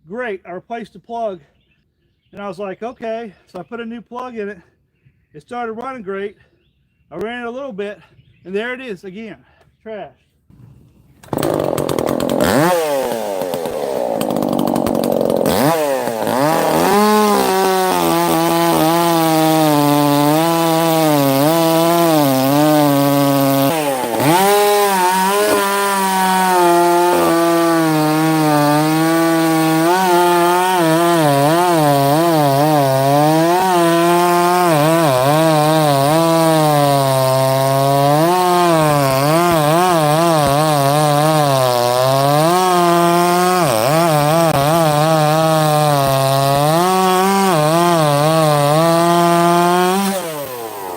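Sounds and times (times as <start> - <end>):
chainsaw cutting wood: 10.5 - 50.9.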